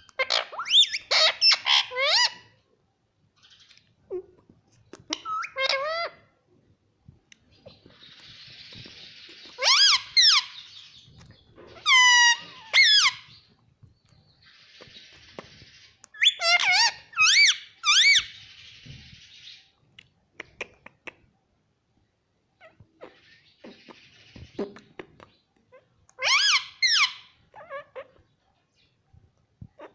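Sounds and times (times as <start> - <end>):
parakeet raspy chatter: 0.1 - 2.3, 9.2 - 10.7, 11.7 - 13.3, 25.7 - 28.2
parakeet squawking: 0.1 - 2.5, 5.1 - 6.2, 9.3 - 10.8, 11.7 - 13.3, 16.2 - 18.4, 25.7 - 28.1.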